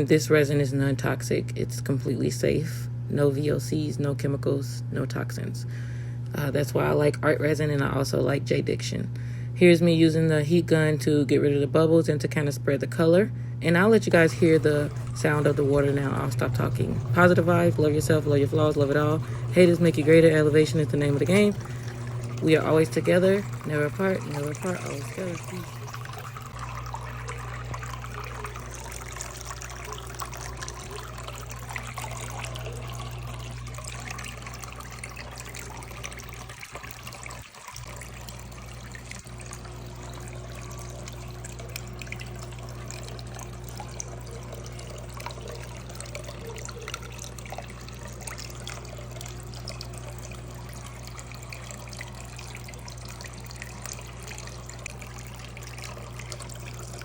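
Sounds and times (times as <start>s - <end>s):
low pump hum: 0.0s - 57.0s
fountain water trickling: 14.1s - 57.0s.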